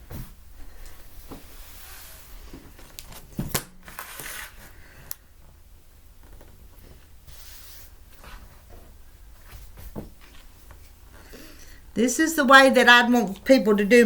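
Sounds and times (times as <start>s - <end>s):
cloth rustling: 0.1s - 4.8s.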